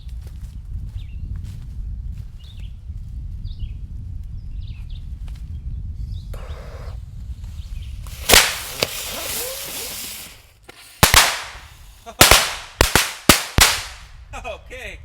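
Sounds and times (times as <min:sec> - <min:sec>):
firecracker hissing: 0:06.4 - 0:14.1
firecracker bangs: 0:08.1 - 0:14.1.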